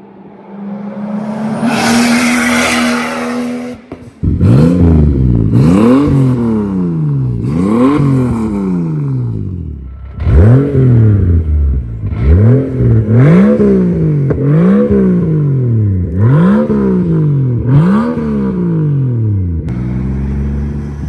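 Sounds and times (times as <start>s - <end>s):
car engine revving: 0.0s - 21.0s.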